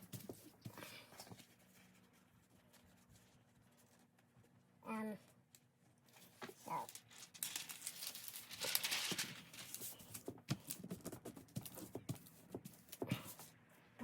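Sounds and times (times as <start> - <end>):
plastic wrapping crinkling: 6.2 - 10.9.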